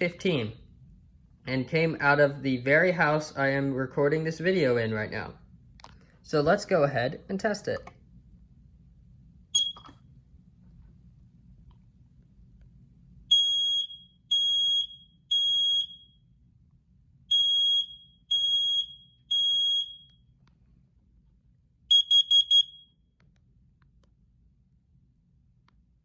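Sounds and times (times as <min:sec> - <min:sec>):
quick alarm beeps: 0:09.6 - 0:10.0, 0:13.3 - 0:16.2, 0:17.3 - 0:20.1, 0:21.9 - 0:23.0
smoke alarm high-pitched beeps: 0:09.6 - 0:10.0, 0:13.3 - 0:16.3, 0:17.3 - 0:20.3, 0:21.9 - 0:23.1.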